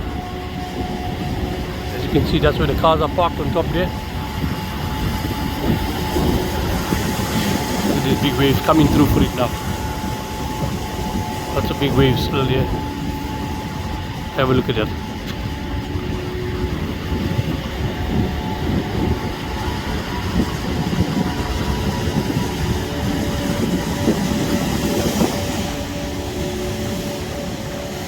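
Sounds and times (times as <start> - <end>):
heavy surf breaking on shore: 0.0 - 28.0.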